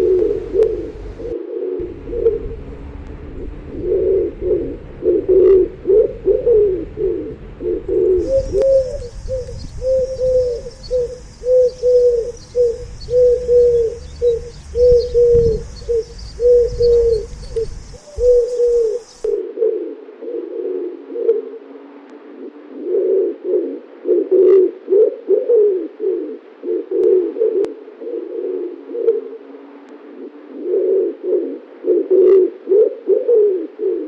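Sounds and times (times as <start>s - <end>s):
low rumble: 0.0s - 19.4s
pigeons cooing: 0.0s - 21.7s, 22.3s - 34.0s.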